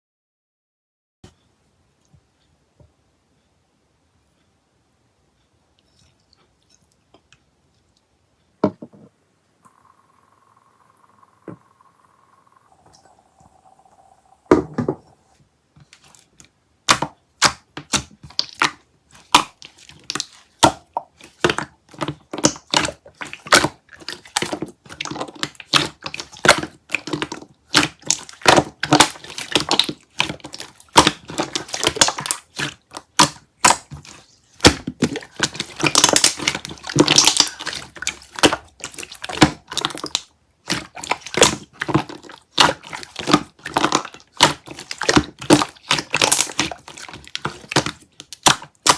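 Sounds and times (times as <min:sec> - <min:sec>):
hands squishing slime: 0:15.8 - 0:48.9.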